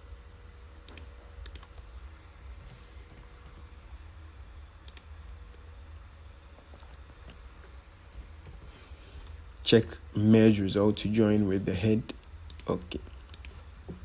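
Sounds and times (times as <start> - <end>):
steady low hum: 0.0 - 14.0
computer mouse and keyboard clicks: 0.9 - 1.9, 4.8 - 5.1, 12.5 - 13.6.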